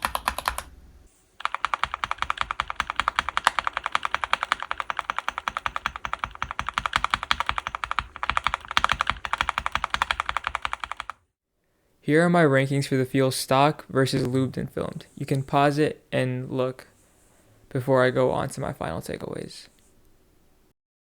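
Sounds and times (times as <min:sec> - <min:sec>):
typing on a mechanical keyboard: 0:00.0 - 0:00.7, 0:01.4 - 0:11.2.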